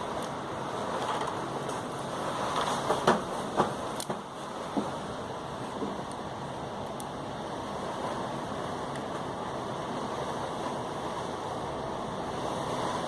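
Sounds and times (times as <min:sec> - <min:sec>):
heavy rain falling: 0:00.0 - 0:13.0.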